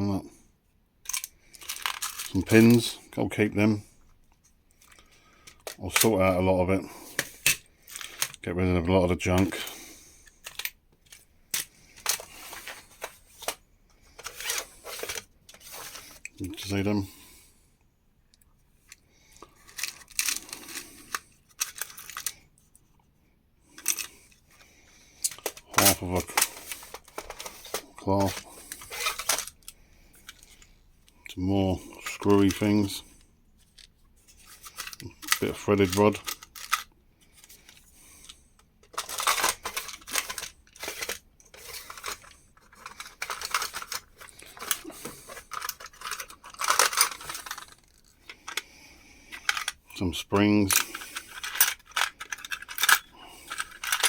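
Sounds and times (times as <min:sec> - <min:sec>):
hands rummaging through small hardware: 0:01.0 - 0:03.0, 0:04.8 - 0:17.1, 0:18.4 - 0:22.8, 0:23.7 - 0:30.7, 0:31.6 - 0:33.0, 0:33.6 - 0:48.7, 0:49.3 - 0:54.0
metal hardware clinking and rattling: 0:38.8 - 0:48.6, 0:50.5 - 0:54.0.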